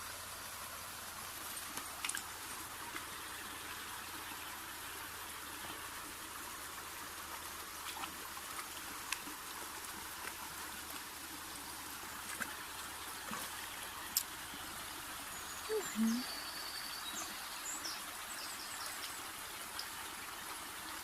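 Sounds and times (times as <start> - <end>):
water trickling: 0.0 - 21.0.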